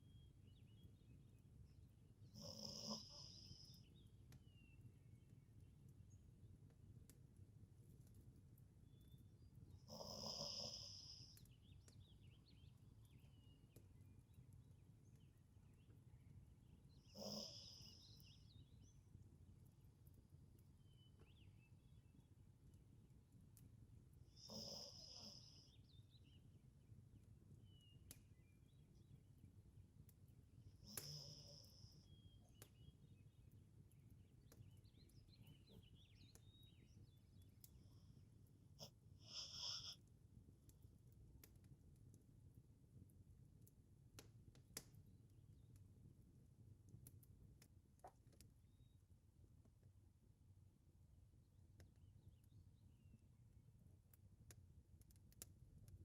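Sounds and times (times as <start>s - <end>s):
faint low hum: 0.0s - 56.0s
dog snoring softly: 2.3s - 3.9s, 9.8s - 11.5s, 17.1s - 18.3s, 24.3s - 25.8s, 30.8s - 32.1s, 38.8s - 40.1s
faint clicks: 6.7s - 16.3s, 27.2s - 28.8s, 29.4s - 46.3s, 46.9s - 48.6s, 54.1s - 56.0s
small high chirps: 8.9s - 19.2s, 30.7s - 38.2s, 38.8s - 40.0s.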